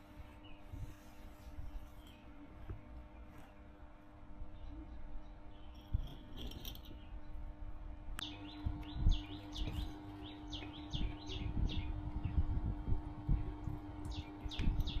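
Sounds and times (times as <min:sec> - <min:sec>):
steady low hum: 0:00.0 - 0:15.0
bird chirping: 0:00.2 - 0:01.0, 0:04.4 - 0:07.5, 0:08.2 - 0:12.6, 0:13.3 - 0:15.0.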